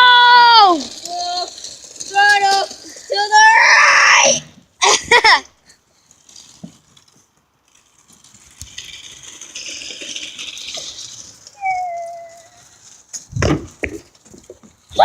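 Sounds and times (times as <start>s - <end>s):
toy motor whirring: 0.0s - 4.4s, 8.2s - 13.2s.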